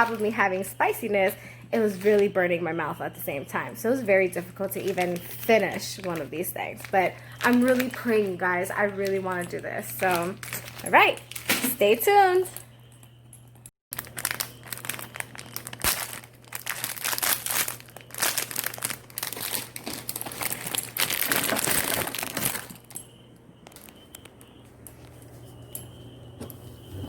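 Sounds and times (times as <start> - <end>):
faint steady hum: 0.0 - 27.0
plastic wrapper crinkling: 4.2 - 12.0, 13.9 - 23.0, 23.6 - 25.1.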